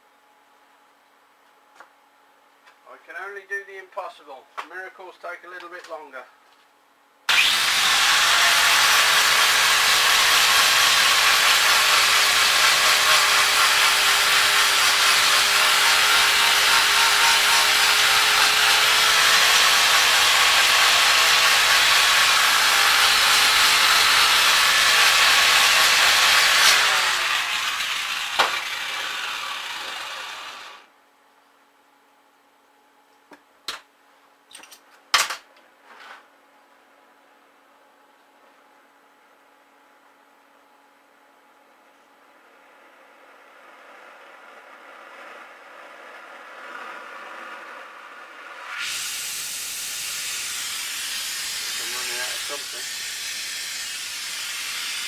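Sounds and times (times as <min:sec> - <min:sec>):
power tool grinding metal: 0:07.3 - 0:30.9, 0:48.5 - 0:55.0.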